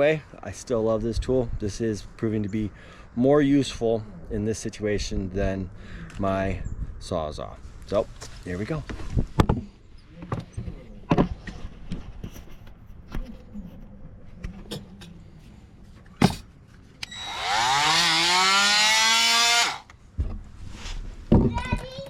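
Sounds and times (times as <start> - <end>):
oscillating multi-tool buzzing: 17.0 - 19.9.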